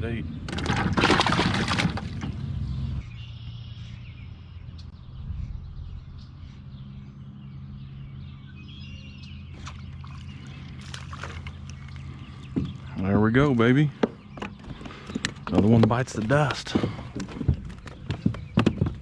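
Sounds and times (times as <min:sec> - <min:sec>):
faint bird chirps: 0:02.7 - 0:13.0.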